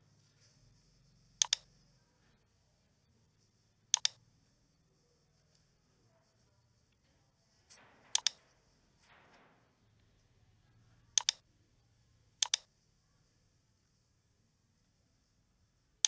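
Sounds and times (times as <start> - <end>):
computer mouse clicking: 1.4 - 1.8, 3.9 - 4.2, 8.1 - 8.4, 11.1 - 11.4, 12.4 - 12.7.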